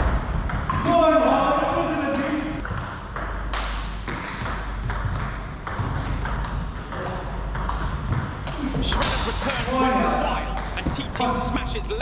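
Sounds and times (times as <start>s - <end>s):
table tennis ball hits: 2.1s - 9.2s.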